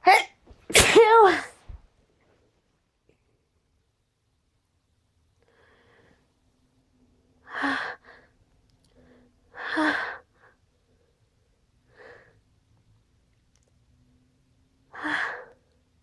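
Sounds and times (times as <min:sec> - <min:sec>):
person breathing before a sneeze: 0:00.1 - 0:01.5.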